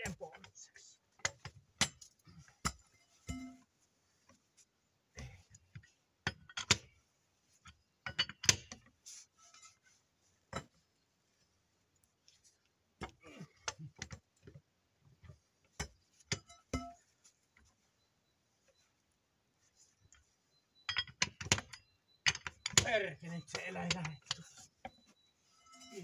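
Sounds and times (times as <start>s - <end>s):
metal tools clicking and knocking: 5.7s - 6.9s, 7.6s - 8.9s, 15.8s - 17.0s, 20.8s - 25.0s.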